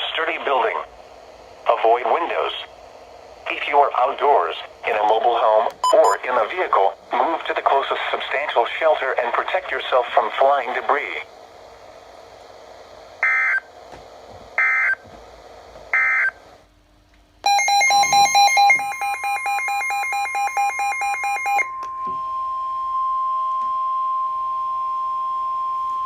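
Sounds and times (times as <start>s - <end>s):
rapid electronic alarm beeps: 5.8s - 6.2s, 17.5s - 21.7s
digital data tone bursts: 5.8s - 6.3s, 17.5s - 21.7s
steady warning alarm tone: 17.4s - 26.0s.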